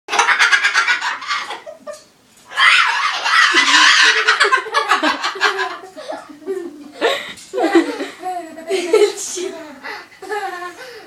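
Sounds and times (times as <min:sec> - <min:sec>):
parrot squawking and screeching: 0:00.2 - 0:01.6, 0:02.5 - 0:04.5.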